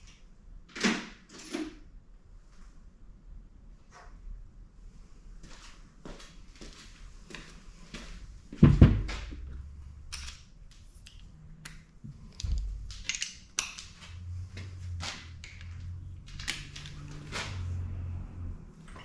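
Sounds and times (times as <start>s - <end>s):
heavy thumps: 8.4s - 9.8s
metal tools clinking: 10.1s - 14.1s.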